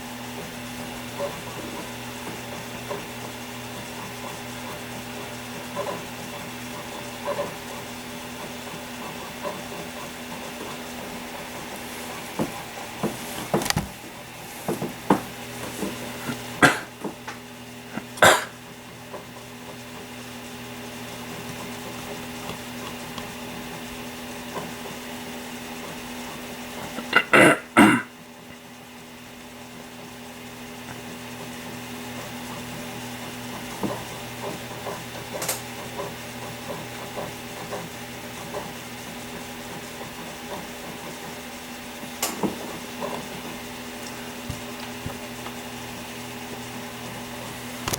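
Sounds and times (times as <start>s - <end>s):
desktop computer hum: 0.0s - 47.9s
person coughing: 16.2s - 17.0s, 17.9s - 18.6s, 27.0s - 28.2s.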